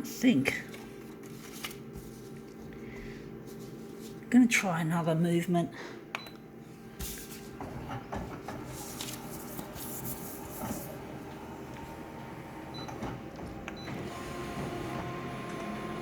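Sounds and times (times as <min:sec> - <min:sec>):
clicks and paper rustling: 0:00.5 - 0:02.6, 0:08.7 - 0:10.9
photocopier humming: 0:06.5 - 0:16.0.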